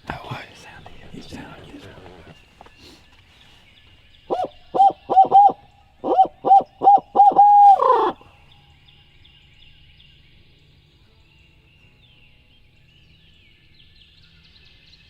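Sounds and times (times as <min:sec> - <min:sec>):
owl hooting: 0:04.3 - 0:08.2.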